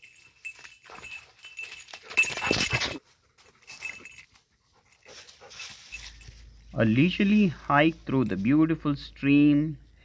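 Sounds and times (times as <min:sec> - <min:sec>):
dog panting: 0:04.5 - 0:05.8.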